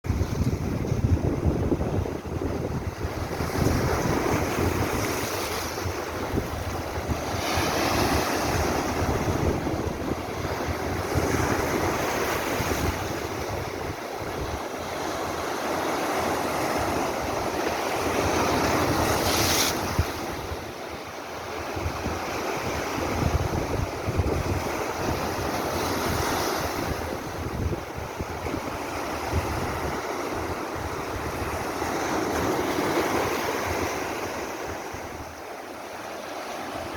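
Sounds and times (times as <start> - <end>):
wind buffeting microphone: 0.0 - 20.8, 21.4 - 35.5
surf breaking on shore: 0.1 - 20.7.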